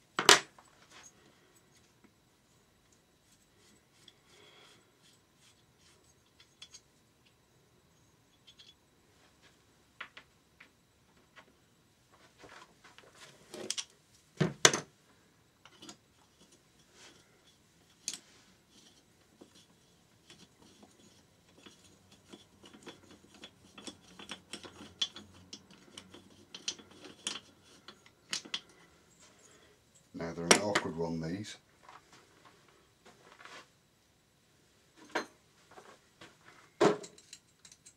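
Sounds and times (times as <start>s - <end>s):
metal tool clicks and clinks: 37.0s - 37.9s.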